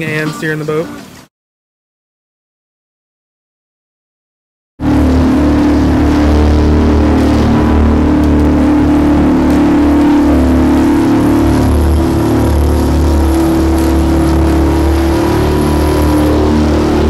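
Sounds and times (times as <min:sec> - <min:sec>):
boat engine running: 0:04.8 - 0:17.0.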